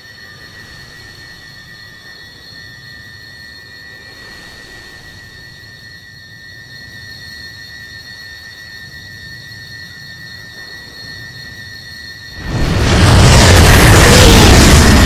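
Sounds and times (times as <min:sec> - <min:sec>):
low rumble: 0:12.4 - 0:15.0.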